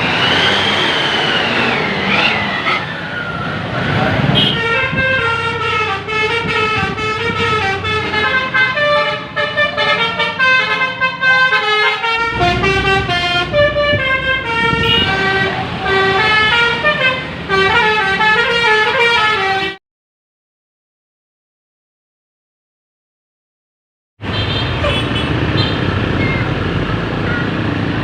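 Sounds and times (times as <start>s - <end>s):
musical bus air horns: 2.6s - 3.0s, 4.4s - 19.8s, 24.2s - 25.8s.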